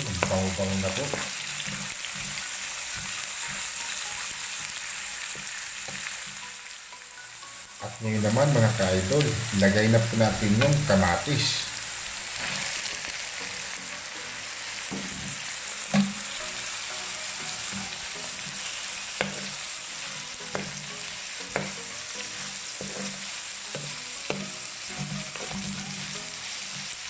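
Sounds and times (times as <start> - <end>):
food sizzling in hot oil: 0.0 - 27.0
spatula knocking against pan: 19.2 - 19.6, 20.4 - 21.9, 22.8 - 25.9.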